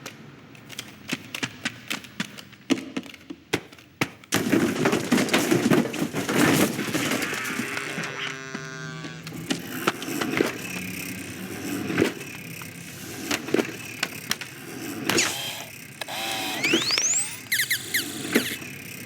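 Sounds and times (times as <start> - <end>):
quick rising squeak: 16.4 - 18.7.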